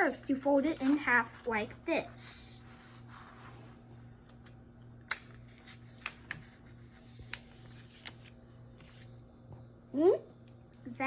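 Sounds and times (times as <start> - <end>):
low steady hum: 0.0 - 11.0
paper being folded and creased: 0.6 - 3.6, 5.1 - 9.2
paper crackles and taps: 4.2 - 9.1.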